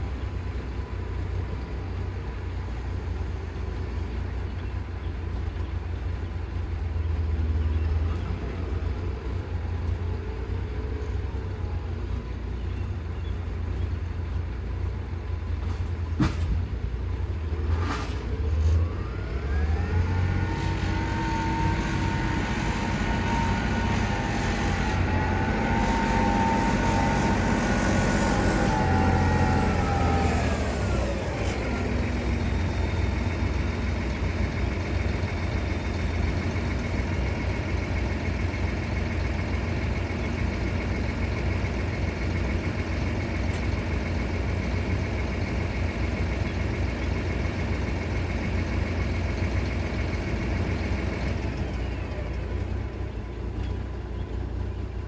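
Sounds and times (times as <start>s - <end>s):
engine rumbling and revving: 0.0s - 55.0s.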